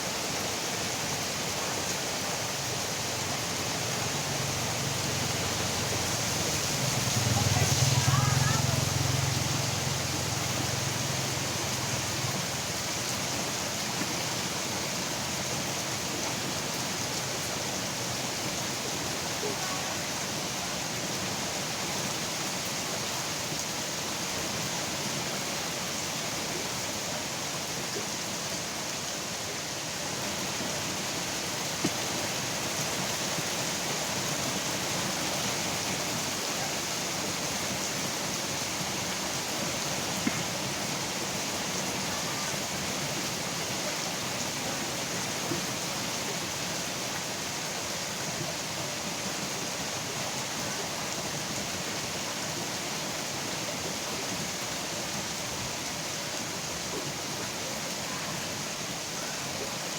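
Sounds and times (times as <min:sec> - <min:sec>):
steady rain falling: 0:00.0 - 0:59.9
raindrops tapping close by: 0:39.4 - 0:41.2.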